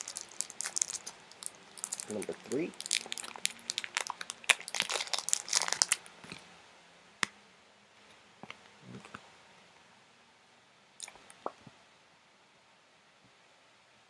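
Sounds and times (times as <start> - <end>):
plastic packaging crinkling: 0.0 - 6.4.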